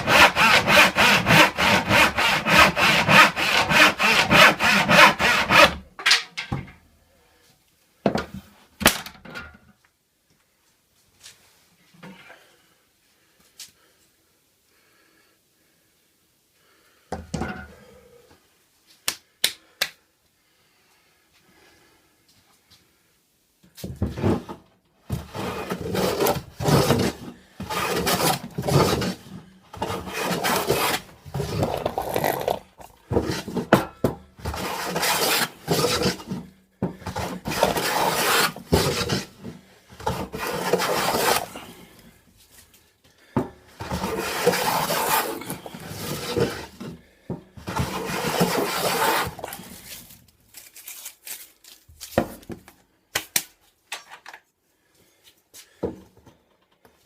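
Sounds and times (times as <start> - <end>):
tool scraping on wood: 25.1 - 41.6, 43.8 - 47.0, 47.6 - 50.0.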